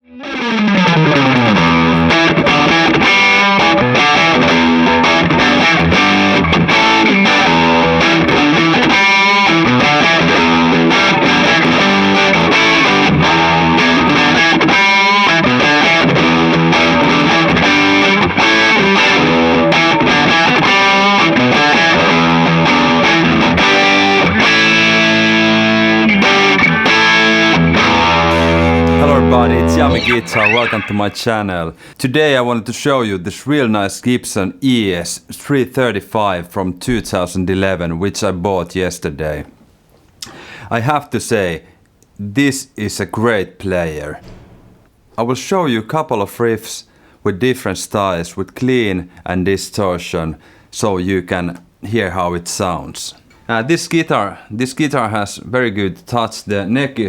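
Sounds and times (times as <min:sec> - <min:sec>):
distorted electric guitar riff: 0:00.0 - 0:31.4.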